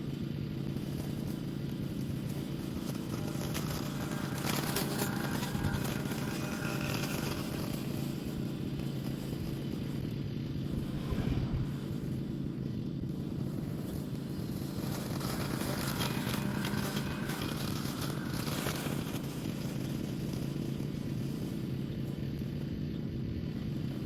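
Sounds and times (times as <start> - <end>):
lawn mower running: 0.0 - 24.0.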